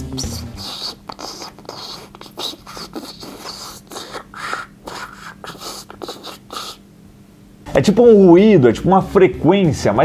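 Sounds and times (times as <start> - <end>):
faint electronic hum: 4.0 - 10.0.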